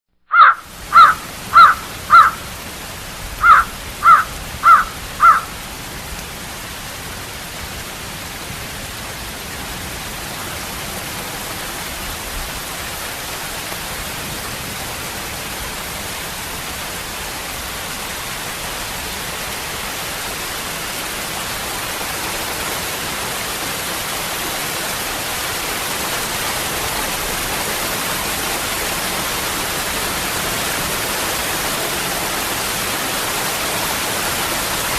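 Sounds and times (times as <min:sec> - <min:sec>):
bird calling loudly: 0:00.3 - 0:02.6, 0:03.4 - 0:05.6
waterfall rushing: 0:00.4 - 0:34.9.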